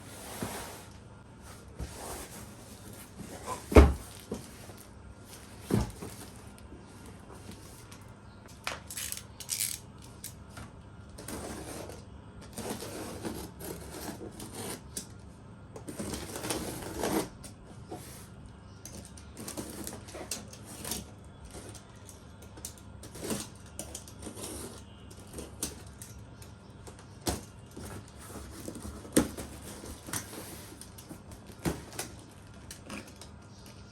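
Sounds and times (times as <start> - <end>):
knocks and clicks of unpacking: 1.8 - 7.7, 26.8 - 33.8.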